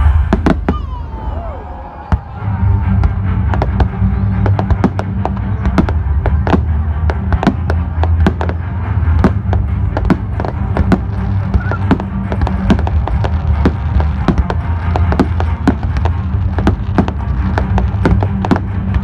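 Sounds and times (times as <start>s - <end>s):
fireworks cracks and bangs: 0.0s - 1.1s, 2.1s - 19.0s
low rumble: 0.0s - 19.0s.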